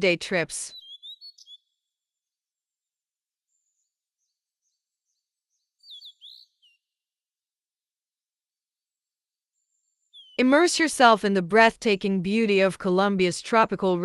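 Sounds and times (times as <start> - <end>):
bird chirps: 0.6 - 2.0, 3.5 - 6.9, 9.6 - 10.5.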